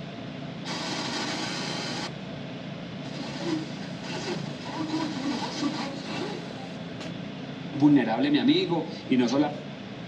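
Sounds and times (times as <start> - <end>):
radio static hiss: 3.2 - 6.8
muffled radio broadcast: 3.4 - 6.8.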